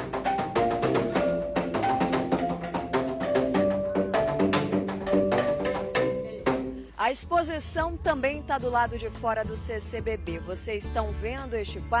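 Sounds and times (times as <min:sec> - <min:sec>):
pitched percussion melody: 0:00.0 - 0:06.9.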